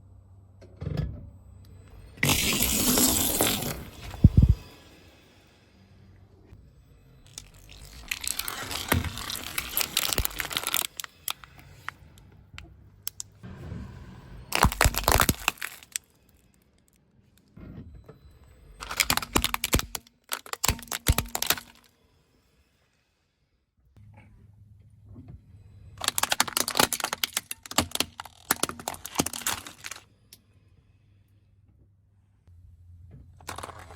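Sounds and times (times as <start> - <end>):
objects crunching under car tyres: 7.3 - 12.2, 14.5 - 16.4, 18.8 - 21.9, 26.0 - 30.0.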